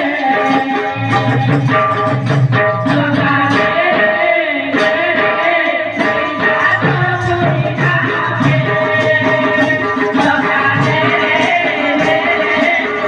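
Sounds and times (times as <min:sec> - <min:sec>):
devotional singing: 0:00.0 - 0:01.7, 0:02.9 - 0:13.0
hand drum percussion: 0:00.0 - 0:13.0.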